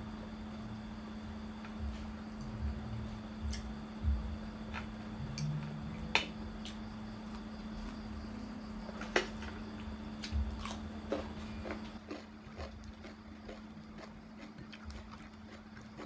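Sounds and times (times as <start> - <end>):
steady low hum: 0.0 - 16.0
chewing and biting smacks: 10.2 - 16.0.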